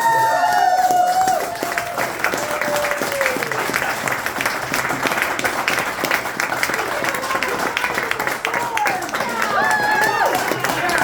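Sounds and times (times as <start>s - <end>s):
person cheering: 0.0s - 3.8s, 7.2s - 11.0s
audience applauding: 0.0s - 11.0s.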